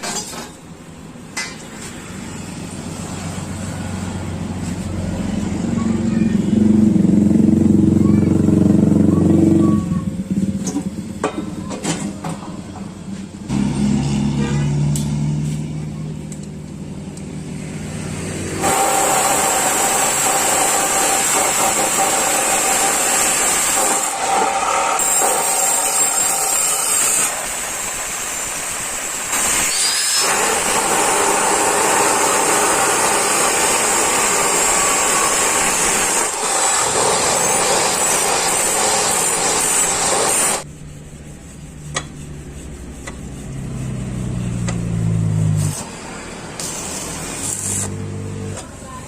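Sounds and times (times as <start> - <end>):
low hum rising in pitch: 13.4 - 18.6, 40.7 - 46.3
power tool running loudly: 17.7 - 40.7.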